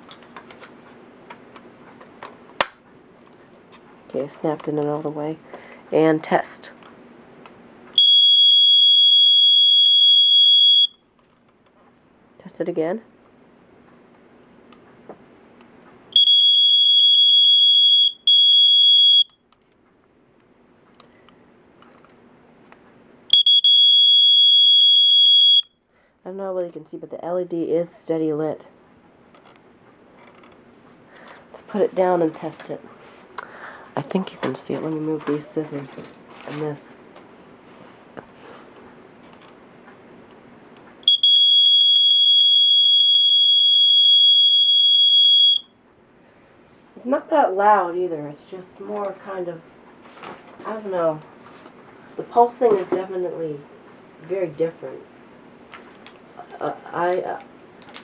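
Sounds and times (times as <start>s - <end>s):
smoke alarm tone: 8.0s - 11.0s, 16.1s - 19.4s, 23.3s - 25.8s, 41.0s - 45.8s.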